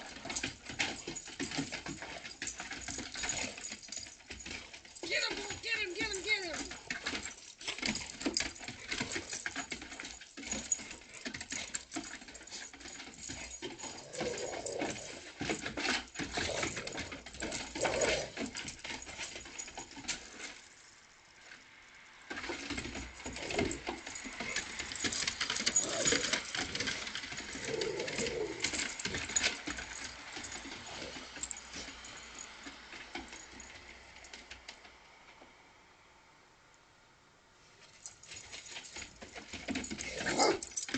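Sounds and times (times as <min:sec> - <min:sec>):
dog paws scrabbling: 0:00.0 - 0:21.0, 0:22.3 - 0:34.7, 0:37.8 - 0:40.9.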